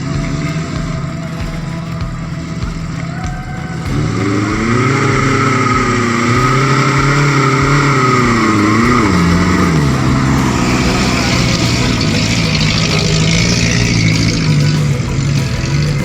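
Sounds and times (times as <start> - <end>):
engine revving: 0.0 - 16.0.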